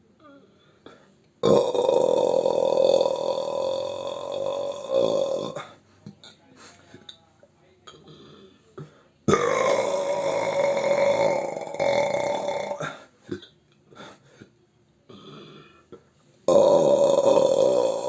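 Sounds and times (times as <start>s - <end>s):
long loud burps: 1.4s - 5.7s, 9.3s - 13.5s, 16.5s - 18.0s.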